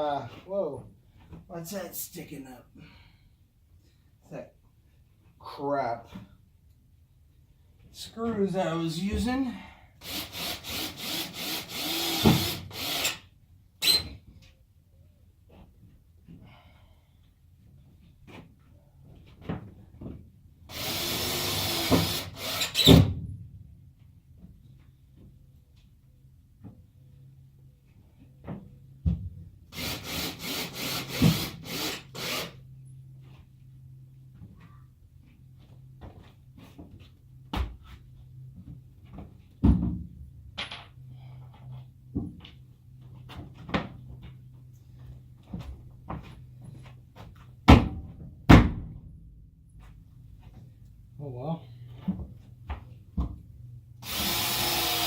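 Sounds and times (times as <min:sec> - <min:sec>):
power drill driving a screw: 0:10.0 - 0:13.2, 0:20.7 - 0:23.0, 0:29.8 - 0:32.6, 0:54.0 - 0:55.0.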